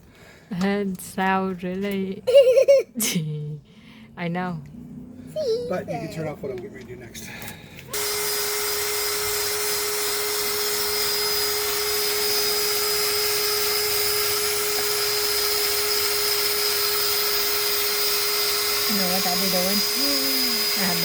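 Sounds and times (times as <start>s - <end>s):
power tool humming with loud hiss: 7.9s - 21.0s.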